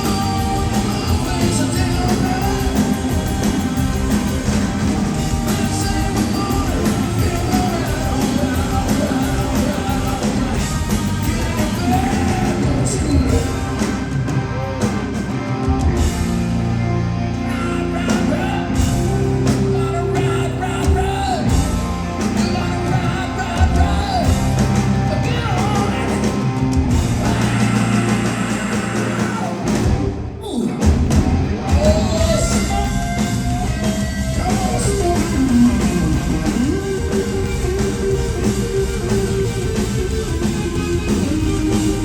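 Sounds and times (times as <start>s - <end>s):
person singing: 0.0s - 13.9s, 17.4s - 21.6s, 22.3s - 29.8s
hard rock band playing live: 0.0s - 42.0s.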